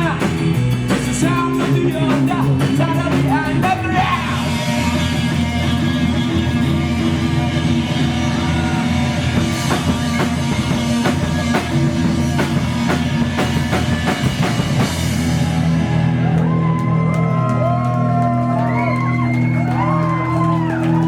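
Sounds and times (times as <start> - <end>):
distorted guitar: 0.0 - 16.9
bass guitar: 0.0 - 21.0
drum kit hits: 9.4 - 15.6.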